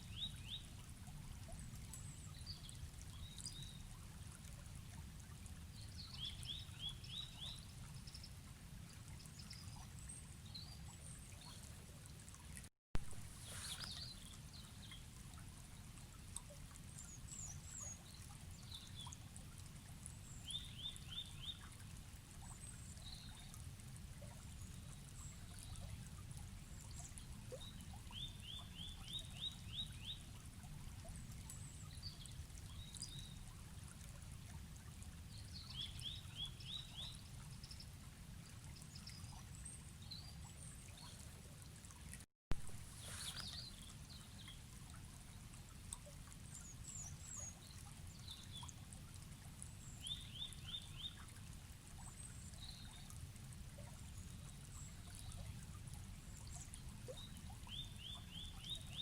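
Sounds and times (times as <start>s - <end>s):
river flowing: 13.1s - 14.9s, 42.6s - 45.0s.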